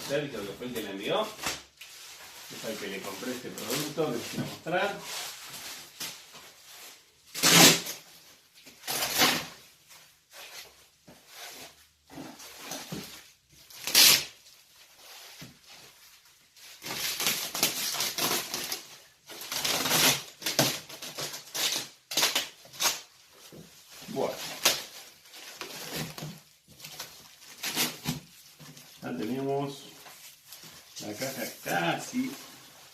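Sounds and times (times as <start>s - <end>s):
packaging tearing: 7.3s - 8.0s, 16.8s - 23.1s
packaging crinkling and rustling: 12.6s - 32.9s.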